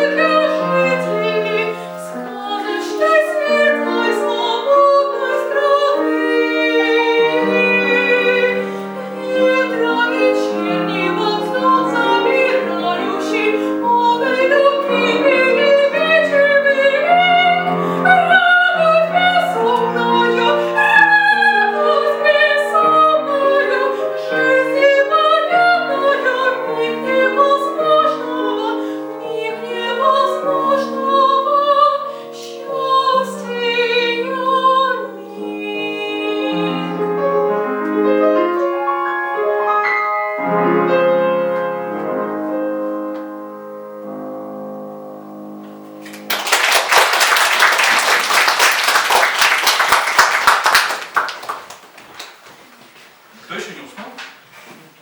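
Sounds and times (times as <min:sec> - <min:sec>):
woman singing with vibrato: 0:00.0 - 0:38.7
piano: 0:00.0 - 0:53.3.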